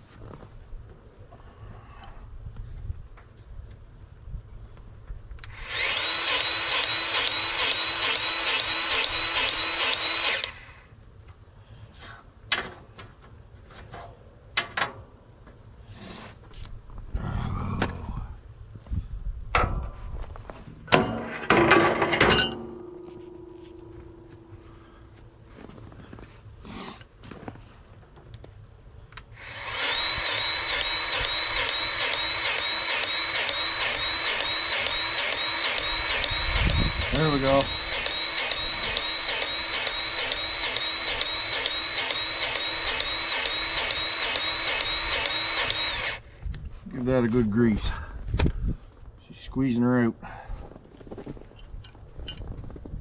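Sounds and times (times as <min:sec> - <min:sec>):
power tool motor pulsing: 0:05.4 - 0:10.8, 0:29.4 - 0:46.3.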